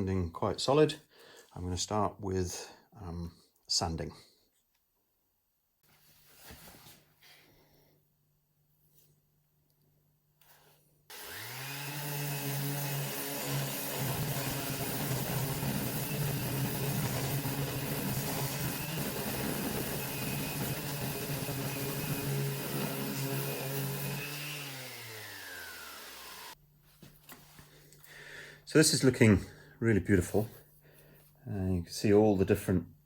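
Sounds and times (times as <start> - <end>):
electric sander sanding wood: 11.1 - 26.6.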